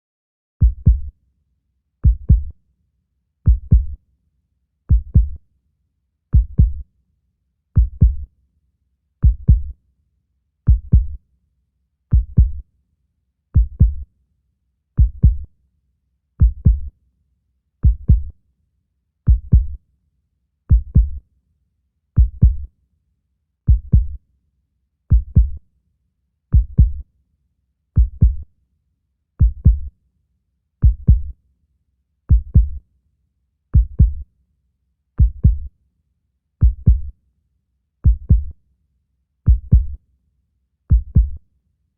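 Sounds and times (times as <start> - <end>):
heartbeat thumps: 0.6 - 1.1, 2.0 - 2.5, 4.9 - 5.4, 6.4 - 6.8, 7.8 - 8.2, 9.2 - 9.7, 10.7 - 11.2, 12.2 - 12.6, 13.6 - 14.0, 15.0 - 15.4, 16.4 - 16.9, 17.9 - 18.3, 19.3 - 19.8, 20.7 - 21.2, 22.2 - 22.6, 23.7 - 24.1, 25.1 - 25.6, 26.6 - 27.0, 28.0 - 28.4, 29.4 - 29.8, 30.8 - 31.3, 32.3 - 32.8, 33.8 - 34.2, 35.2 - 35.7, 36.6 - 37.1, 38.1 - 38.5, 39.5 - 40.0, 40.9 - 41.4.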